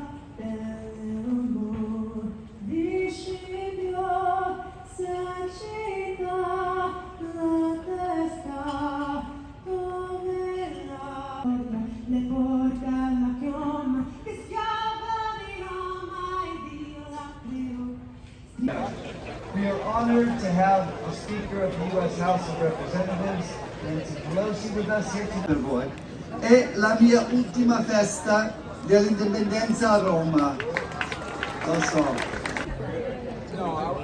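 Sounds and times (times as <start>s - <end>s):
woman singing slow melody: 0.0s - 18.7s.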